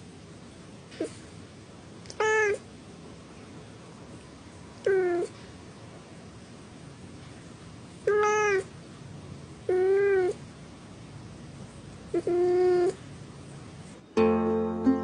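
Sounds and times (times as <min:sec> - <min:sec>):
cat meowing: 0:02.1 - 0:02.6, 0:04.8 - 0:05.3, 0:08.0 - 0:08.7, 0:09.7 - 0:10.4, 0:12.1 - 0:13.0.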